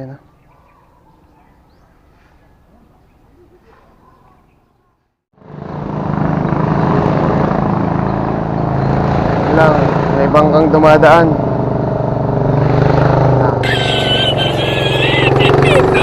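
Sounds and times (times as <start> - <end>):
small boat engine passing: 11.0 - 16.0
faint riverside background: 13.6 - 16.0.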